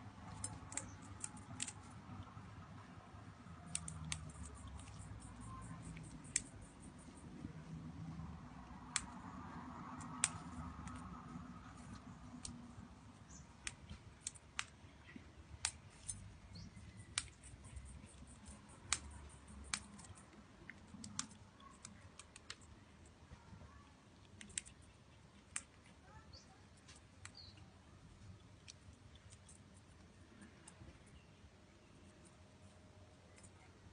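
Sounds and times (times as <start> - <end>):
beaks tapping at seed: 0.2 - 2.3, 3.6 - 7.6, 8.6 - 22.8, 24.2 - 27.7
faint bird chirps: 26.0 - 27.8.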